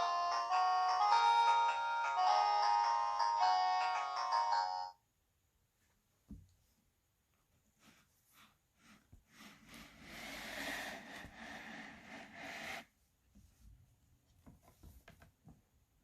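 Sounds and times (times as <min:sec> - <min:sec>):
board book pages rustling: 0:07.4 - 0:13.7.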